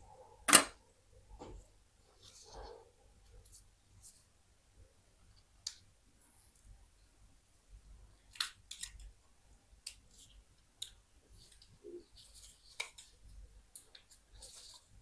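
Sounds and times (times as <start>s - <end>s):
small parts clicking and snapping: 8.3s - 9.2s.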